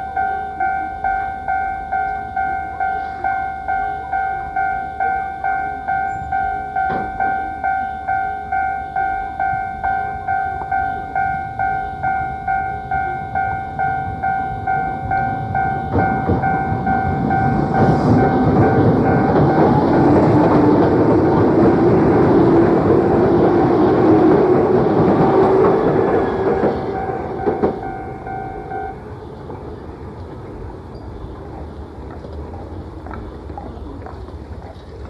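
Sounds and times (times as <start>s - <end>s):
level crossing bell ringing: 0.0s - 20.2s, 25.0s - 29.0s
train passing: 0.0s - 35.0s.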